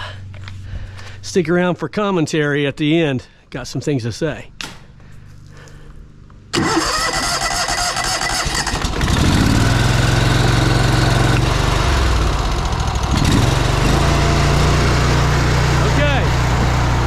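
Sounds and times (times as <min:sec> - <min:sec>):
pressure washer engine running: 0:07.4 - 0:17.0.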